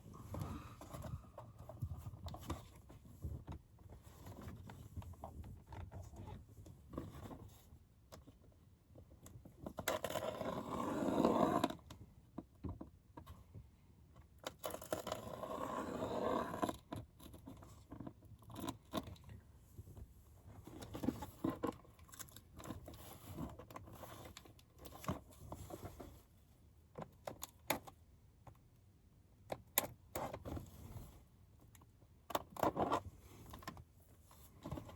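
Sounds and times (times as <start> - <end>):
clicks knocks and scraping: 29.5 - 34.9.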